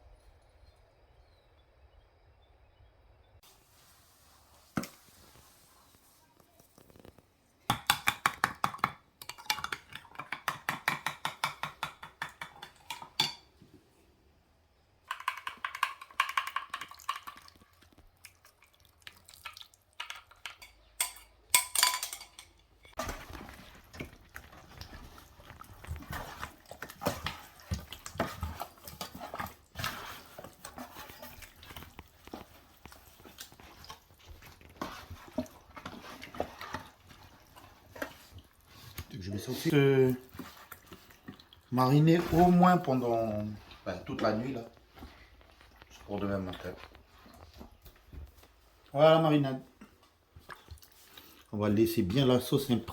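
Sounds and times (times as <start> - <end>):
utensil clinking against bowl: 7.7 - 13.5, 20.0 - 23.0.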